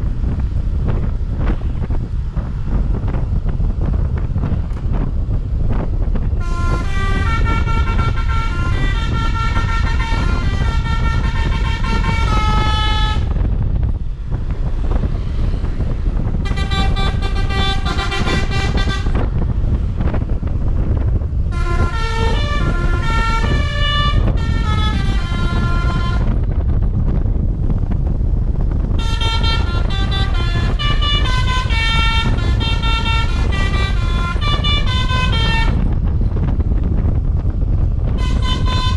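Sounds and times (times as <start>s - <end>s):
bus musical horn melodies: 6.3s - 13.6s, 16.2s - 19.8s, 21.4s - 26.6s, 28.8s - 36.1s, 38.0s - 38.9s.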